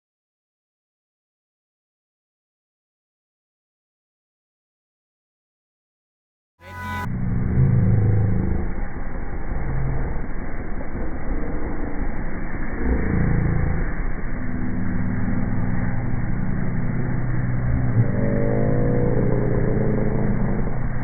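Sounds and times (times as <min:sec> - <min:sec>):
vehicle engine running: 0:06.6 - 0:21.0.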